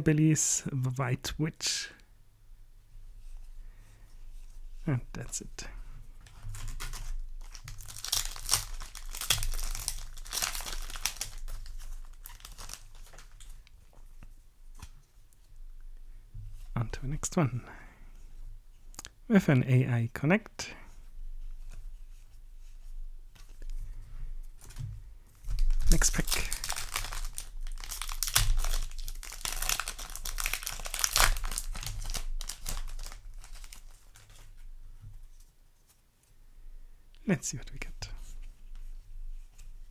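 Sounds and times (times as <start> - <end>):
foil wrapper crinkling and tearing: 6.3 - 13.7, 25.5 - 34.5.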